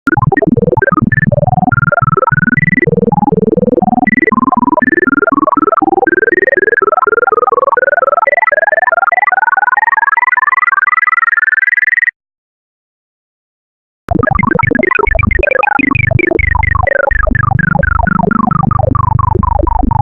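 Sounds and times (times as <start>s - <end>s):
rapid synthesized beeps: 14.1s - 20.0s.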